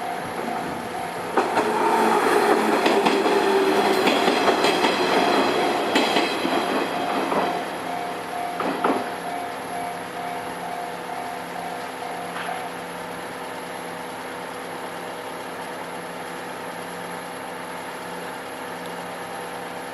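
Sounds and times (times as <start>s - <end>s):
level crossing bell ringing: 0.0s - 1.5s, 4.0s - 12.8s.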